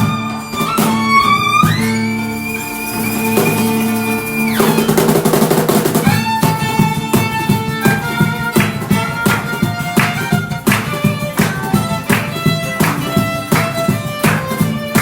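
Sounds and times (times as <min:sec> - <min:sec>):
band music: 0:00.0 - 0:15.0
violin sliding note: 0:00.0 - 0:15.0
drum roll: 0:03.0 - 0:09.3.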